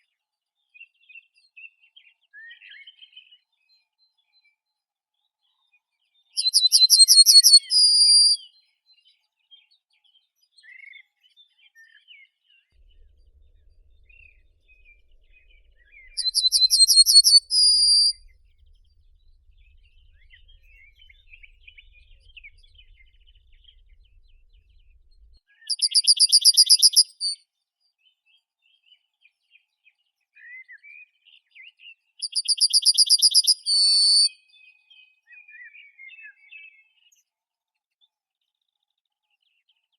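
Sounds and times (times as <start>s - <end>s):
songbird trilling: 6.4s - 8.4s, 15.3s - 18.2s, 25.7s - 27.4s, 32.2s - 34.3s
faint bird chirps: 6.4s - 8.5s, 12.8s - 27.4s, 32.2s - 34.3s.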